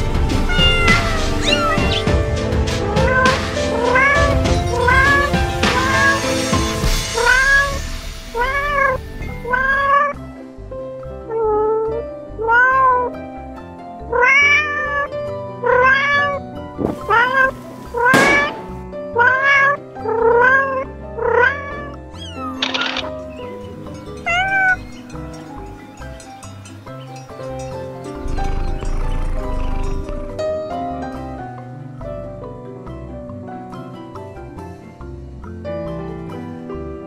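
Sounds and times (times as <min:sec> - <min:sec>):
background music: 0:00.0 - 0:37.0
cat meowing: 0:00.3 - 0:02.2, 0:07.2 - 0:07.8, 0:08.4 - 0:10.1, 0:14.1 - 0:16.4, 0:17.0 - 0:18.6, 0:19.2 - 0:19.8.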